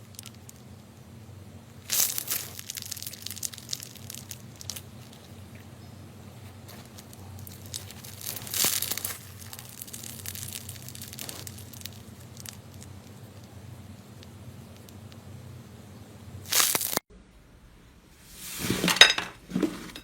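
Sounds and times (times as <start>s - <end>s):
crunchy squish: 0.0s - 1.1s, 1.7s - 15.4s, 16.4s - 17.0s
slime crackling pops: 7.4s - 12.9s, 16.5s - 17.0s.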